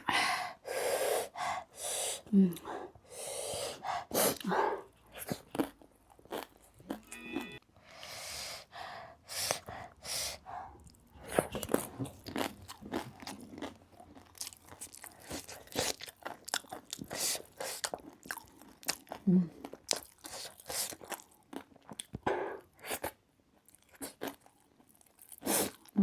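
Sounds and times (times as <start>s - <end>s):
sharp hissing breaths: 0.6s - 2.3s, 3.1s - 4.3s
person chewing crunchy food: 4.1s - 7.5s, 10.8s - 26.0s.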